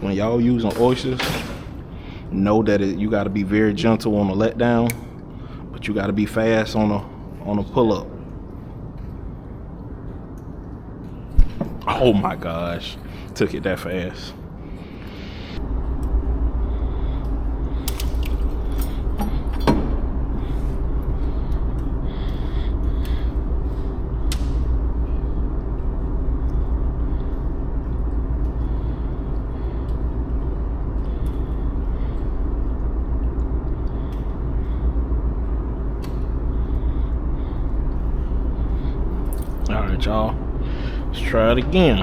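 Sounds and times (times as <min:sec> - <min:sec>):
faint hum: 0:00.0 - 0:42.0
low rumble: 0:15.6 - 0:42.0.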